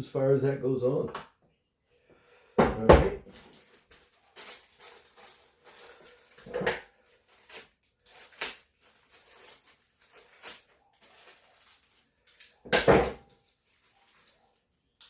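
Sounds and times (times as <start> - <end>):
hand tools and metal parts clinking: 3.3 - 15.0.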